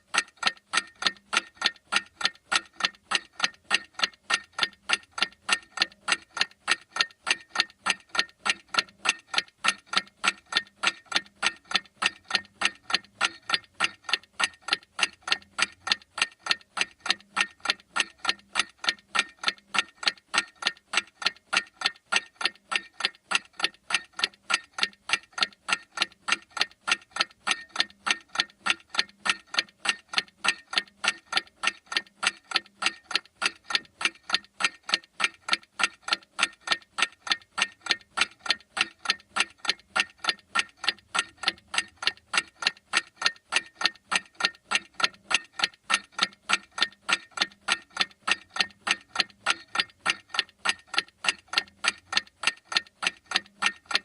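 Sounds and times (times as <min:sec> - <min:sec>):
clock ticking: 0:00.0 - 0:54.0.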